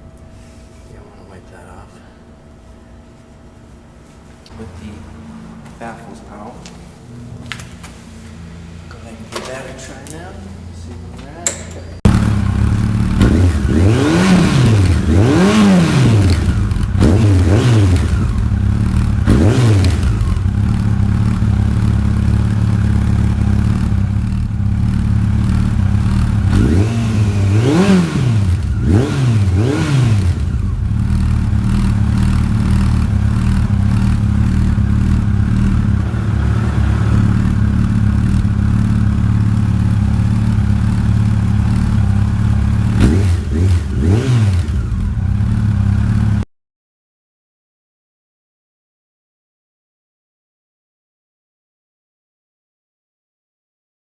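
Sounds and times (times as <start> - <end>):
motorcycle engine idling and revving: 4.5 - 6.2, 7.0 - 9.5, 11.4 - 46.5.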